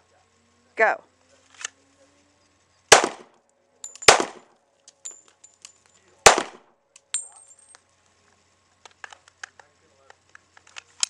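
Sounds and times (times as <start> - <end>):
pistol shots with ringing echo: 2.9 - 4.5, 6.2 - 7.4.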